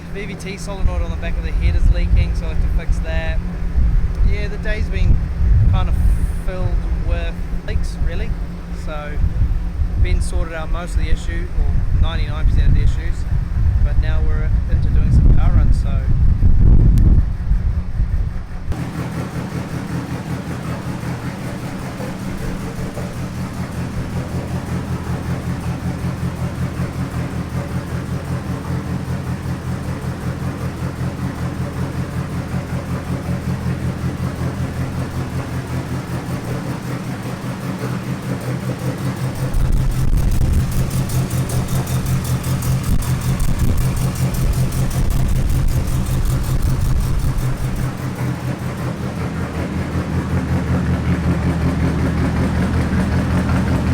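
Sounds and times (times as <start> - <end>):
car engine running under load: 0.0 - 53.9.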